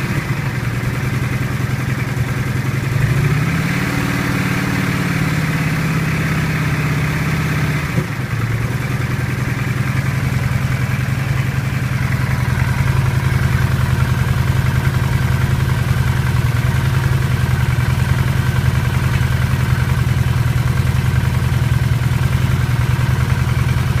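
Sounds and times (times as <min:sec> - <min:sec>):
engine idling with knocking pulse: 0:00.0 - 0:24.0.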